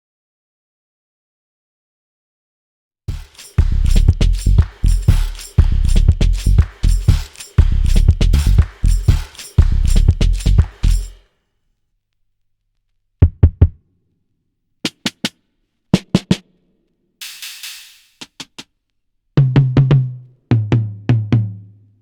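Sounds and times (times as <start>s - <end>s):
deep pitched drum booms: 3.1s - 11.0s
low drum thumps: 3.1s - 11.1s
hissy ringing drum hit: 3.1s - 11.2s, 17.2s - 18.2s
sharp drum cracks: 3.1s - 11.2s, 17.2s - 18.6s.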